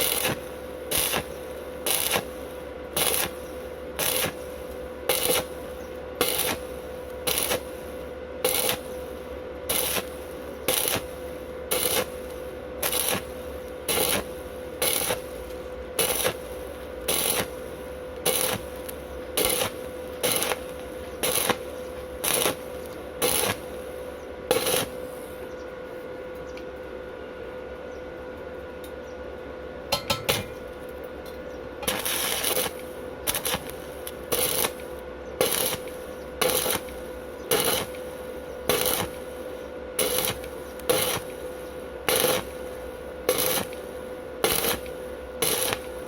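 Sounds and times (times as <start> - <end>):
welding arc crackling: 0.0 - 25.4, 29.9 - 30.9, 31.8 - 46.0
faint steady whine: 0.0 - 46.0.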